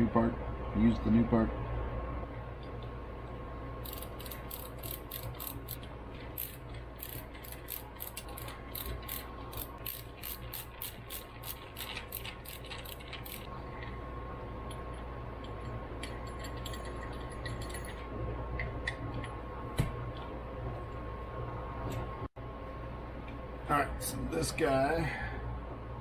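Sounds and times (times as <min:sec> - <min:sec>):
hand ratchet clicking: 0:03.8 - 0:05.8, 0:06.4 - 0:13.5.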